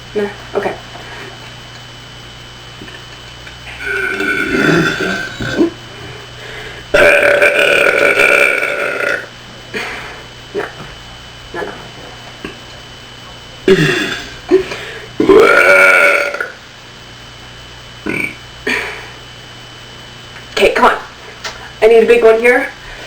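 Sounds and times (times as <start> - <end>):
woman burping: 3.8 - 5.8, 6.9 - 10.8, 13.6 - 16.6, 18.1 - 19.0.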